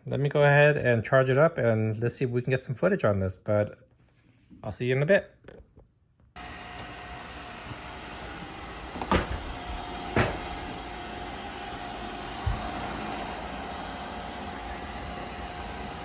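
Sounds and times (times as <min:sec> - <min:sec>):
robot vacuum humming and whining: 0:06.4 - 0:16.0.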